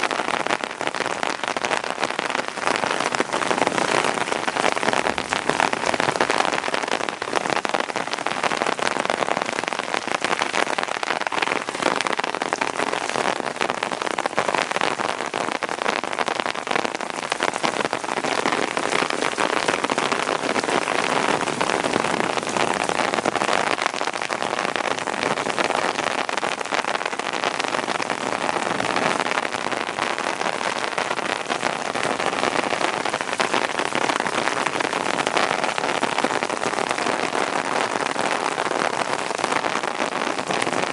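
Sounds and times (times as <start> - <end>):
heavy rain on hard surfaces: 0.0 - 40.9.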